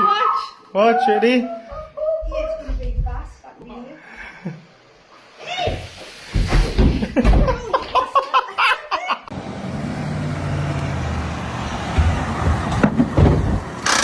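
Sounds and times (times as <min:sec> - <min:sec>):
low motor vehicle drone: 0:09.3 - 0:13.9.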